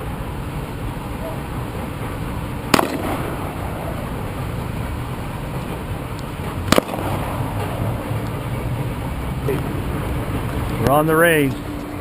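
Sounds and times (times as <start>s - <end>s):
low background rumble: 0.0s - 12.0s
gunshot: 2.7s - 3.5s, 6.7s - 7.3s.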